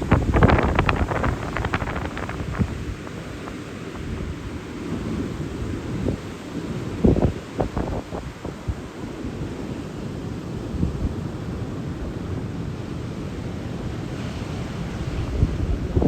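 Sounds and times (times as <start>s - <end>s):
strong wind buffeting microphone: 0.0s - 12.5s
surf rumbling on beach: 0.0s - 16.0s.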